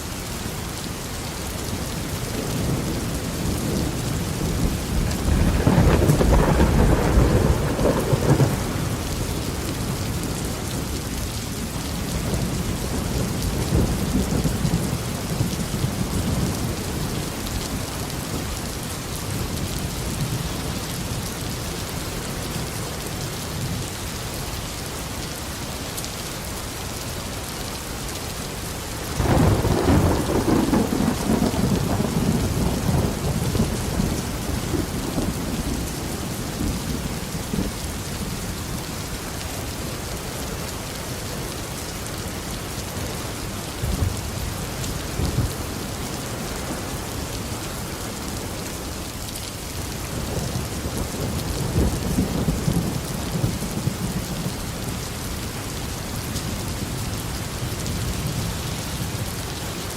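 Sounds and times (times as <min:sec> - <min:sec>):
heavy rain falling: 0:00.0 - 0:59.9
rolling thunder: 0:02.4 - 0:10.8, 0:29.2 - 0:38.4.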